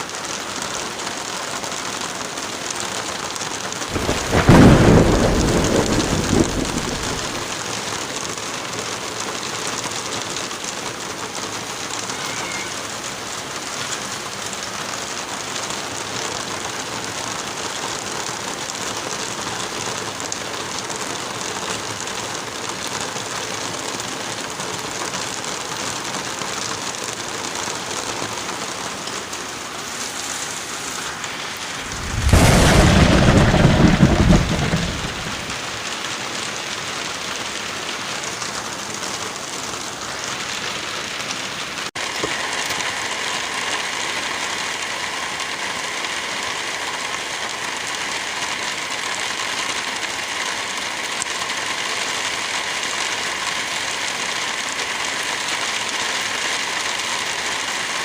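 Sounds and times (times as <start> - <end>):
heavy rainfall: 0.0 - 58.0
thunder clap and rumble: 3.9 - 7.6, 31.6 - 36.0.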